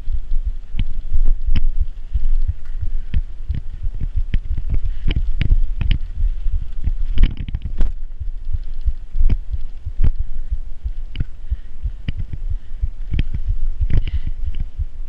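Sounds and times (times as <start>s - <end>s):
bicycle rattling and knocking: 0.0s - 15.0s
wind buffeting microphone: 0.0s - 15.0s.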